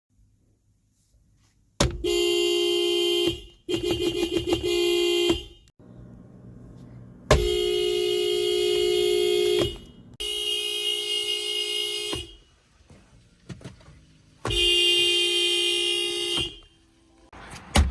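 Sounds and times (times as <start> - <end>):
car horn blasts: 1.8 - 5.7, 7.3 - 12.6, 14.4 - 17.0.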